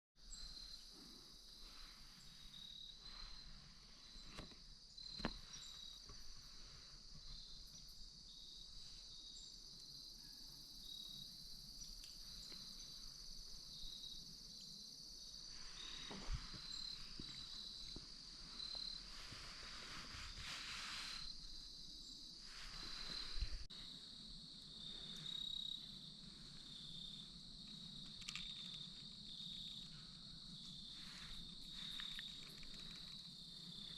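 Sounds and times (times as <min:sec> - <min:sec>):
insect chorus with pulsing trill: 0:00.2 - 0:33.9
rustles: 0:15.4 - 0:23.9, 0:24.6 - 0:33.9.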